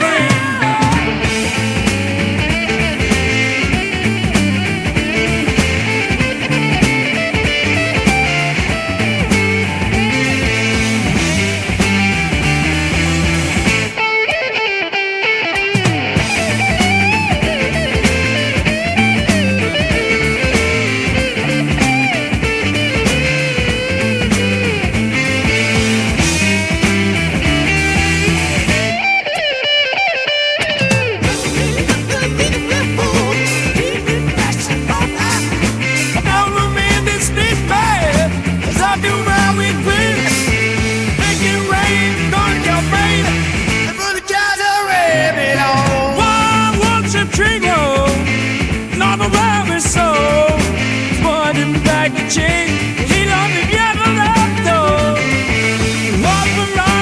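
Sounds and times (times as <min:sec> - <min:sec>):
electric guitar bending notes: 0:00.0 - 0:57.0
psychedelic rock band playing: 0:00.0 - 0:57.0.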